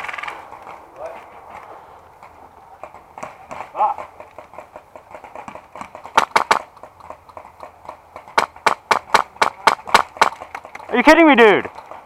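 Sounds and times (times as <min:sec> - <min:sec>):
airsoft gun shots: 0:05.8 - 0:06.7, 0:08.4 - 0:10.4.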